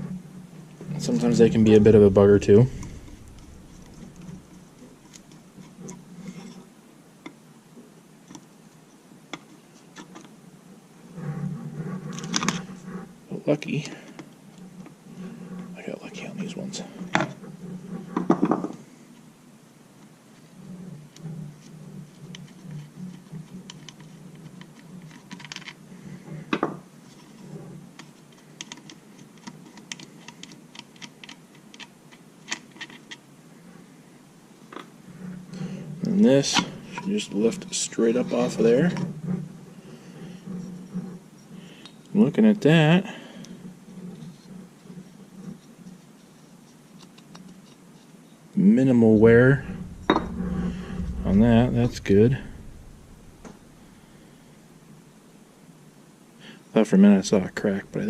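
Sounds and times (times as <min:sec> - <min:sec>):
loud knock: 0:49.6 - 0:54.2.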